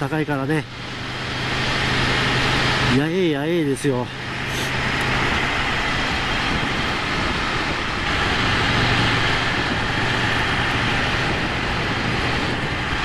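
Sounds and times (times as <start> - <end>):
motorcycle engine cruising: 0.0 - 13.0
wind rushing on microphone: 0.0 - 13.0.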